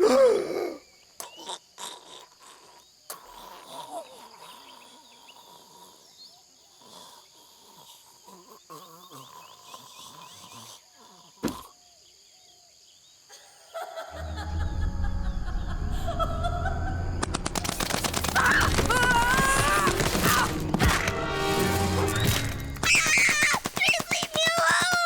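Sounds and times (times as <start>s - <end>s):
dramatic cartoon music: 14.2s - 23.7s
paintball gunfire volleys: 17.4s - 25.0s.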